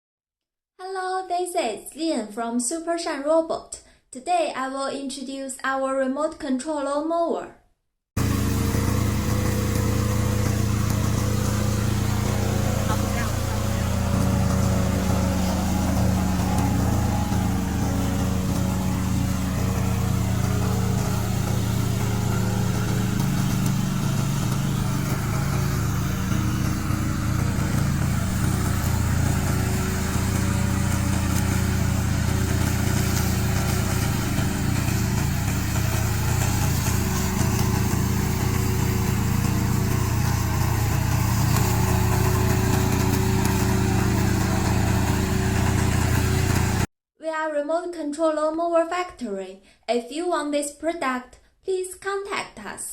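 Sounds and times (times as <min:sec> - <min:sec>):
brush mower engine running: 0:08.2 - 0:46.9.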